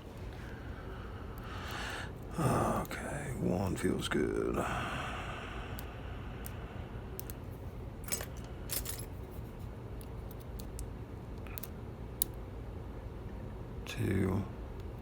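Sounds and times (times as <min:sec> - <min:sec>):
lock pick ticking and scraping: 0:07.2 - 0:07.4, 0:08.0 - 0:10.8.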